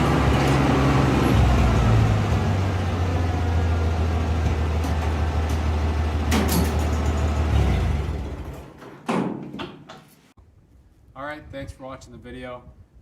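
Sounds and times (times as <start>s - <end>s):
tractor engine running: 0.0s - 8.9s.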